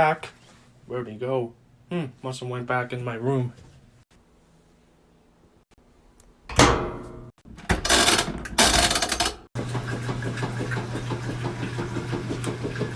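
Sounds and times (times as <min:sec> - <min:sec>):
washing machine humming: 0:06.4 - 0:12.9
washing machine door clunk: 0:06.5 - 0:09.3.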